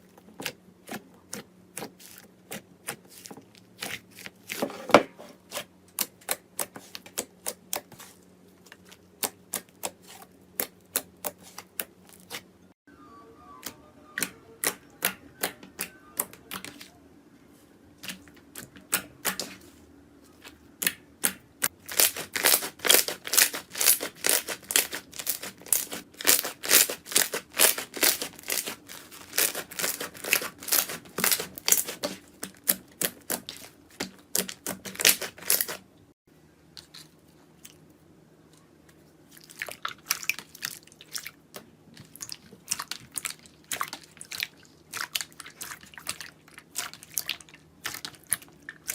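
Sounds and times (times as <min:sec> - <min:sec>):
slime crackling and popping: 0:21.8 - 0:35.8.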